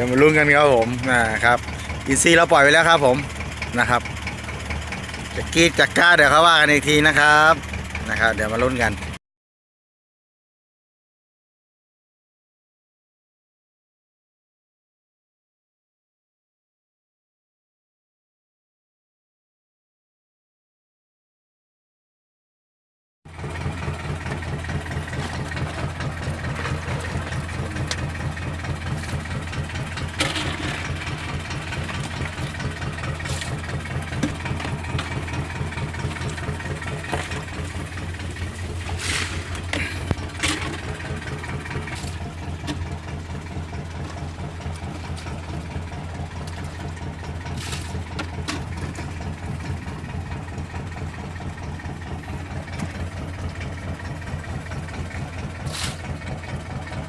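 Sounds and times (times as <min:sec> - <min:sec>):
engine idling: 0:00.0 - 0:09.2, 0:23.3 - 0:57.0
sharp clicks and knocks: 0:25.1 - 0:45.8.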